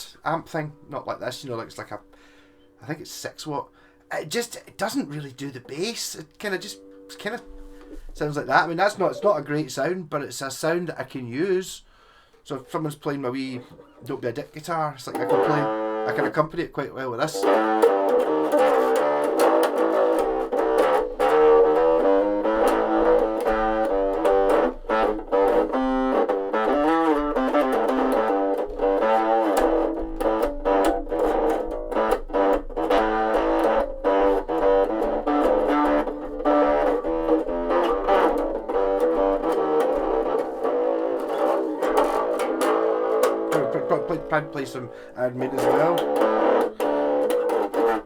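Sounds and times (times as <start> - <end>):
electric bass through small amp: 15.1 - 16.6, 17.2 - 48.0.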